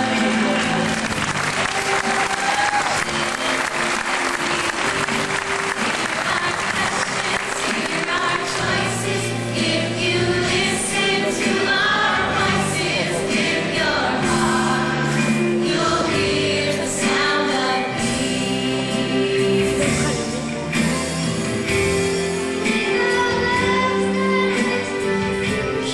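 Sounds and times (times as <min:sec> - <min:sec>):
audience applause: 0:00.0 - 0:09.0
choir singing with accompaniment: 0:00.0 - 0:25.9.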